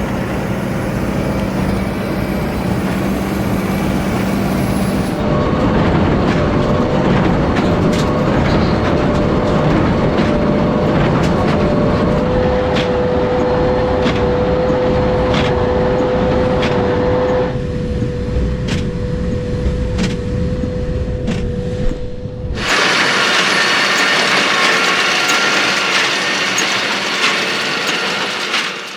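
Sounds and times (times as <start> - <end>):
hissing rattling mechanical sound: 0.0 - 5.3, 22.6 - 28.9
tractor engine rumble: 0.0 - 16.7
machinery whine: 0.0 - 28.9.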